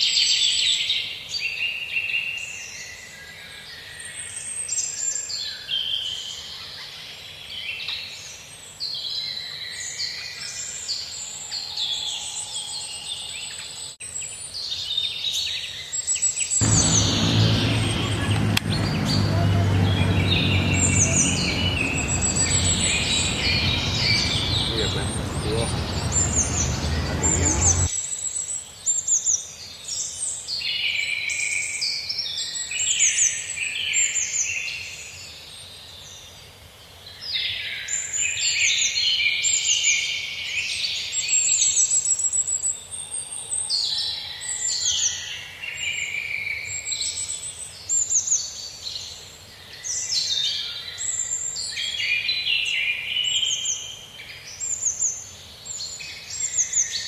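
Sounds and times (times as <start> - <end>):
small birds chirping and singing: 0.0 - 27.9.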